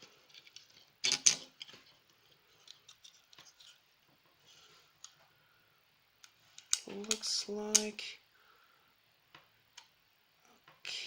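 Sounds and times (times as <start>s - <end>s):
light clicks and scrapes: 0.0s - 3.8s.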